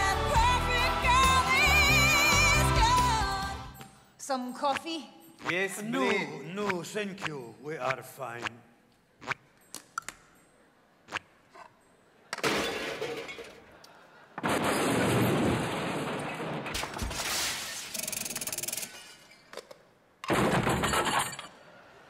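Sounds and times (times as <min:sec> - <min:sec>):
crashing and shattering: 0:12.4 - 0:13.7, 0:14.4 - 0:18.1, 0:20.3 - 0:21.6.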